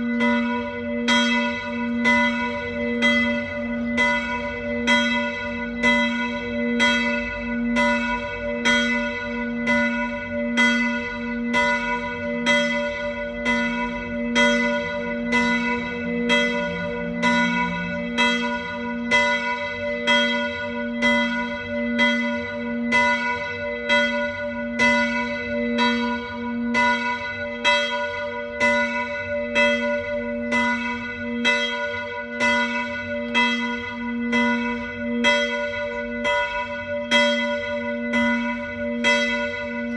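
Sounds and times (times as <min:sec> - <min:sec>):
church bells ringing: 0:00.0 - 0:39.9
long low bell hum: 0:00.0 - 0:39.9.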